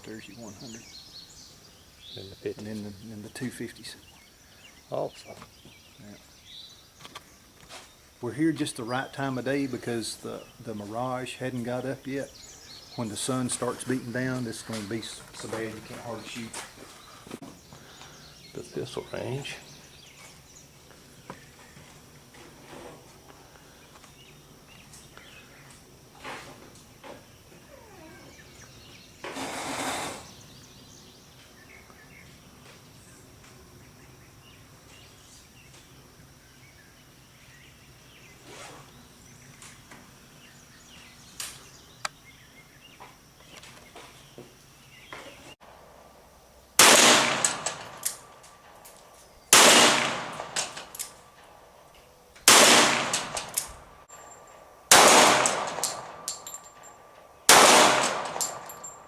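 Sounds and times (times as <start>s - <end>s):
gunshots with long echo: 46.8s - 48.1s, 49.5s - 50.9s, 52.4s - 53.6s, 54.9s - 56.3s, 57.5s - 58.6s.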